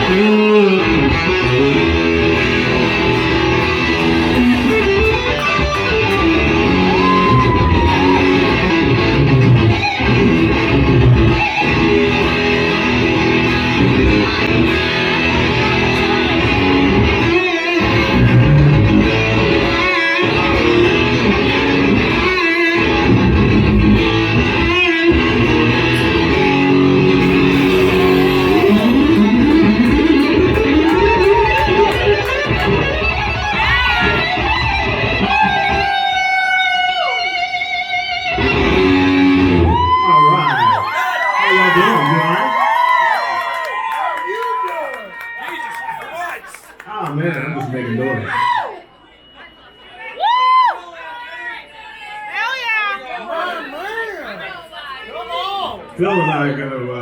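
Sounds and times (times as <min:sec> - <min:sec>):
electric guitar playing: 0:00.0 - 0:40.7.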